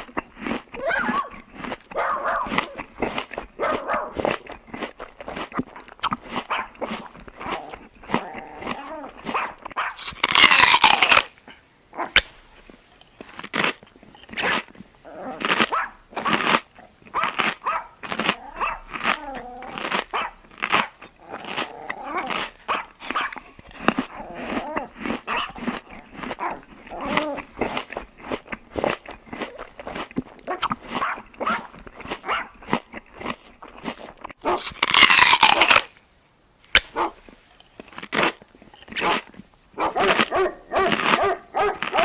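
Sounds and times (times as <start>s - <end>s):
dogs crunching food: 0.0s - 36.0s, 36.7s - 42.0s
dogs growling: 15.0s - 15.8s, 18.1s - 20.4s, 21.2s - 27.8s.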